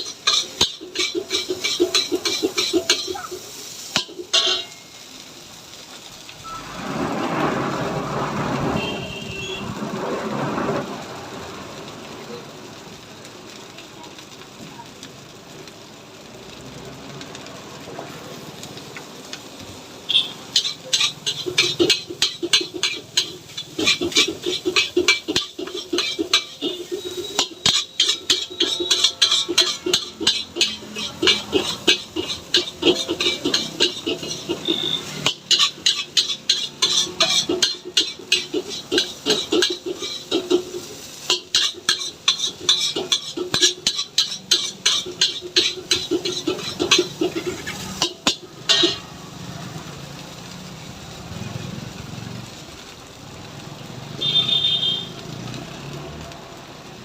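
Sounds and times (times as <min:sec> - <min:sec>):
metal spatula scraping a wok: 0:00.0 - 0:05.0, 0:20.1 - 0:49.1
steady hiss: 0:00.0 - 0:08.2.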